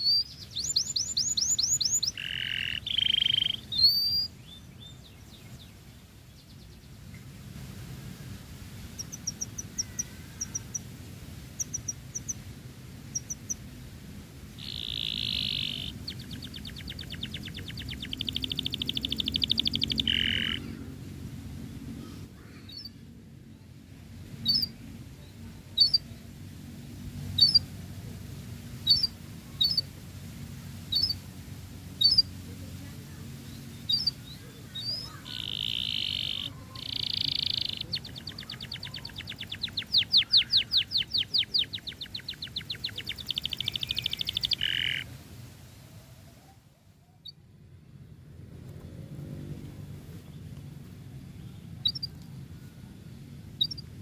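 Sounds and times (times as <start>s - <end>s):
canary singing: 0.0s - 5.7s, 8.8s - 13.7s, 14.5s - 21.0s, 24.4s - 24.8s, 25.8s - 26.2s, 27.4s - 27.7s, 28.8s - 29.9s, 30.9s - 31.2s, 32.0s - 32.3s, 33.7s - 45.1s, 51.8s - 52.3s, 53.5s - 54.0s.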